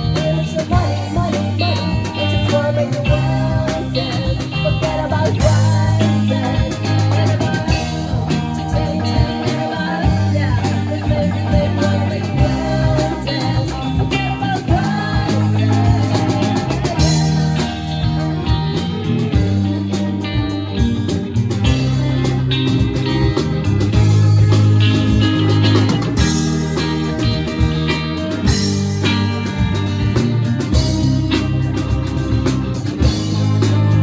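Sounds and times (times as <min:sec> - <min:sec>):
person singing: 0:00.0 - 0:24.3
drum kit: 0:00.0 - 0:34.0
electric guitar: 0:00.0 - 0:34.0.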